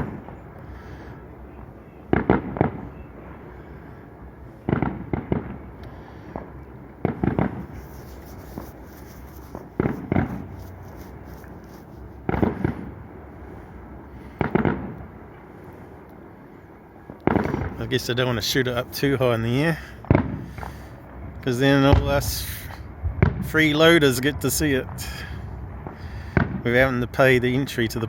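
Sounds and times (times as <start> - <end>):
firework shells bursting: 7.0 - 12.9.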